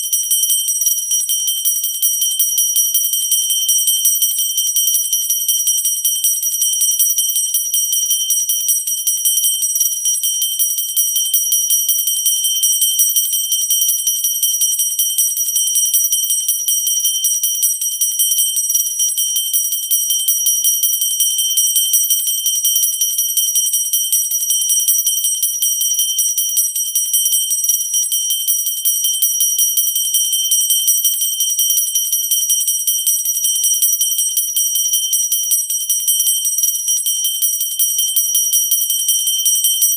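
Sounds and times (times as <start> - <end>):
hand bell rung rapidly: 0.0 - 39.9.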